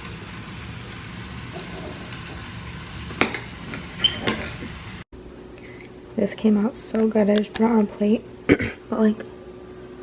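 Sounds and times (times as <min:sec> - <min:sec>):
food sizzling in a frying pan: 0:00.0 - 0:05.0.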